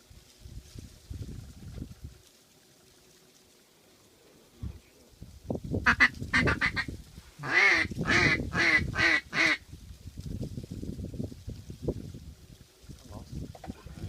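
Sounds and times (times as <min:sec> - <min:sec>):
duck quacking: 0:05.9 - 0:09.6.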